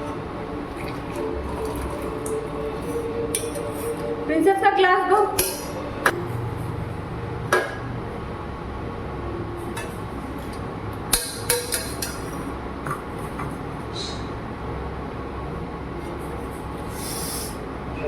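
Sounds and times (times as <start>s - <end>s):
steady low hum: 0.0s - 18.0s
glasses and utensils clinking: 5.4s - 5.9s, 11.1s - 12.5s.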